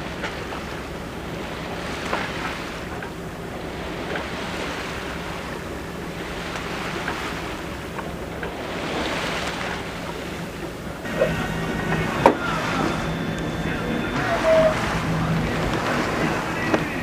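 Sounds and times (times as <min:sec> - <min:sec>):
water splashing along boat hull: 0:00.0 - 0:17.0
wind on microphone: 0:08.6 - 0:17.0.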